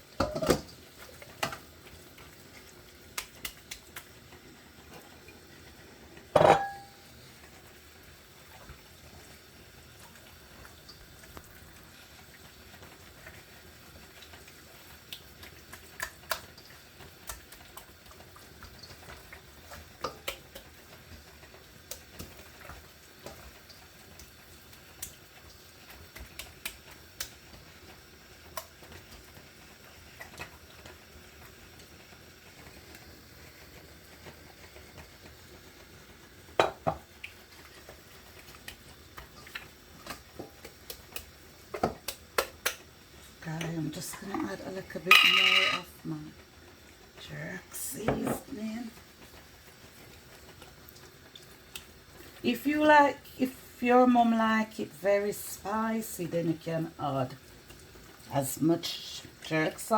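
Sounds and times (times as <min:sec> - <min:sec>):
dishes clicking and tapping: 0:00.2 - 0:00.7, 0:06.4 - 0:07.0, 0:36.6 - 0:37.0, 0:45.1 - 0:45.9
ringing dish clink: 0:06.4 - 0:07.0, 0:45.1 - 0:45.9.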